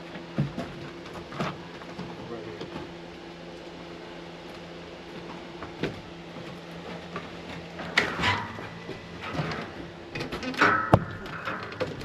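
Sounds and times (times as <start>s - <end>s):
steady low hum: 0.0s - 12.0s
tools knocking and clattering: 7.8s - 12.0s.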